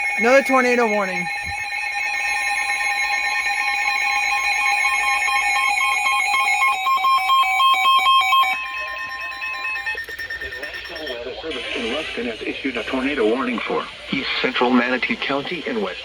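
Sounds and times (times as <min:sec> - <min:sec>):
electronic alert tones: 0:00.0 - 0:11.2
beeping pattern: 0:00.0 - 0:11.7.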